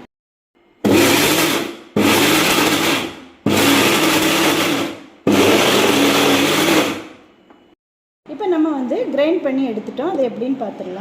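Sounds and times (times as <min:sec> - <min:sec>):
mixer grinder pulses: 0:00.8 - 0:07.2.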